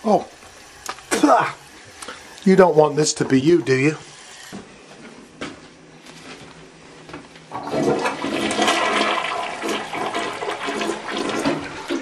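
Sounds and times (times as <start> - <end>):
toilet flushing: 7.5 - 12.0.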